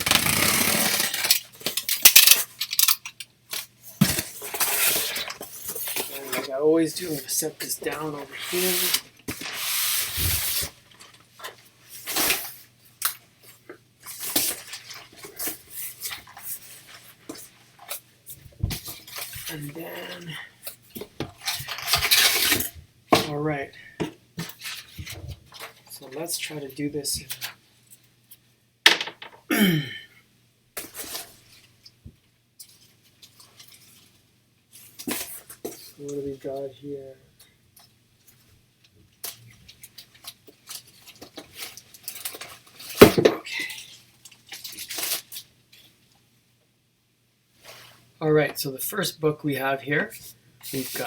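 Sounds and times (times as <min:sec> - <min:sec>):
packing material rustling: 0:00.0 - 0:02.9, 0:03.6 - 0:12.7, 0:43.8 - 0:46.0.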